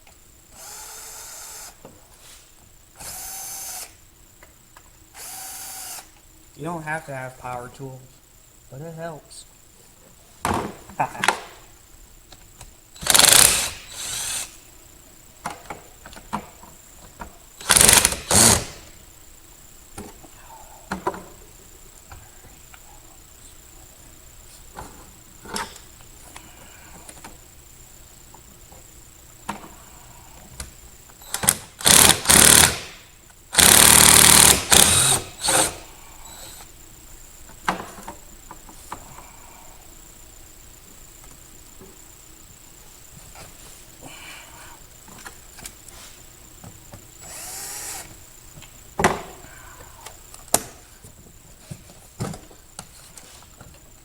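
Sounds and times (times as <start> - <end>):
cordless power tool bursts: 0.6 - 1.8, 3.0 - 4.0, 5.1 - 6.2, 13.0 - 14.6, 17.6 - 18.9, 31.2 - 36.7, 47.2 - 48.2.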